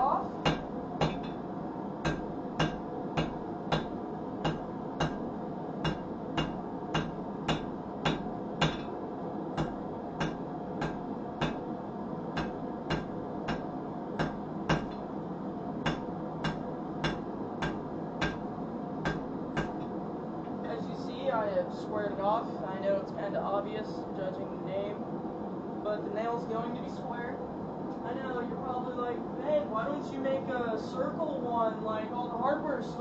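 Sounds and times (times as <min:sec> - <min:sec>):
steady hum: 0:00.0 - 0:33.0
hammer striking on anvil: 0:00.4 - 0:01.4, 0:02.0 - 0:08.9, 0:09.6 - 0:11.7, 0:12.4 - 0:15.0, 0:15.8 - 0:19.9.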